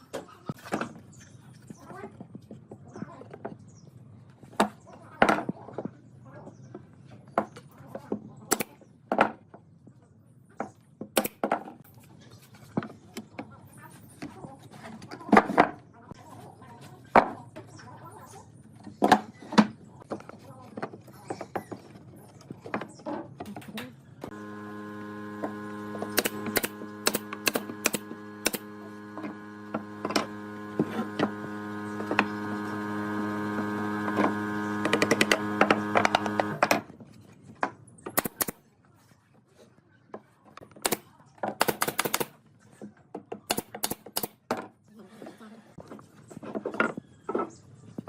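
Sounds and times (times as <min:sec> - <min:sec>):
power tool motor humming: 0:24.2 - 0:36.7.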